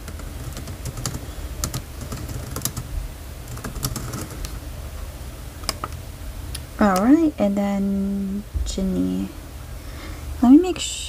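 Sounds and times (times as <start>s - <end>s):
keyboard typing: 0.0s - 2.9s, 3.5s - 4.6s
low steady hum: 0.0s - 11.0s.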